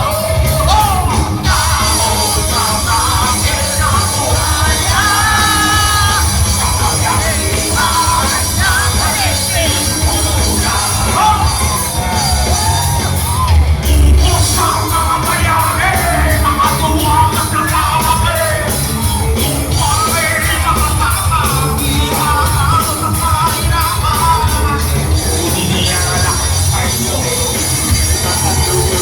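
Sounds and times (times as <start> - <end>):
male singer howling: 0.0 - 13.2
live rock band playing: 0.0 - 29.0.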